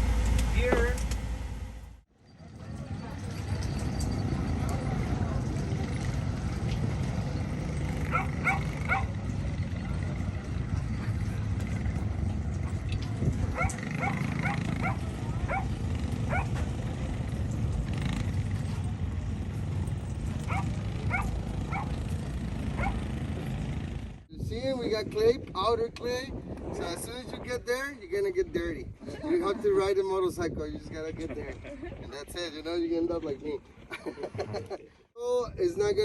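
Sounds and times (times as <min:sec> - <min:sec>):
steady low rumble: 0:00.0 - 0:02.1
dog barking: 0:08.1 - 0:09.2, 0:13.5 - 0:16.6, 0:20.5 - 0:22.0, 0:22.8 - 0:23.0.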